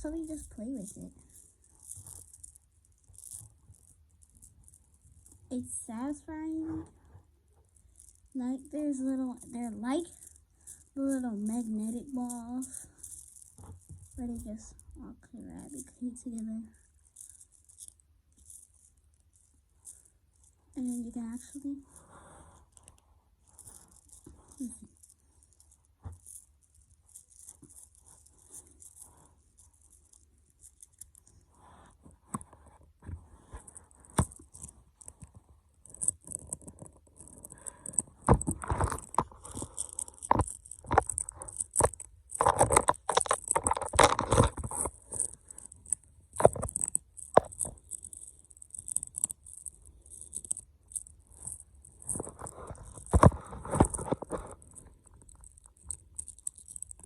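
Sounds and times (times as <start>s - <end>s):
magnetic balls clicking and rattling: 0.0s - 57.0s.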